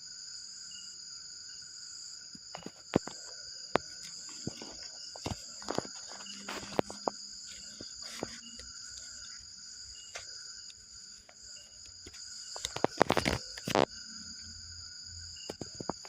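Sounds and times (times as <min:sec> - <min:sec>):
crickets and night insects: 0:00.0 - 0:16.0
knocks and rustles: 0:02.4 - 0:10.4, 0:11.2 - 0:13.9
scattered clicks: 0:11.8 - 0:13.9.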